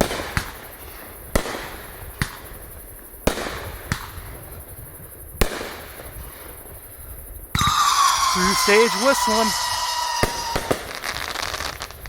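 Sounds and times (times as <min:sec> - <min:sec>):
fireworks bangs: 0:00.0 - 0:12.0
fireworks hiss: 0:00.0 - 0:12.0.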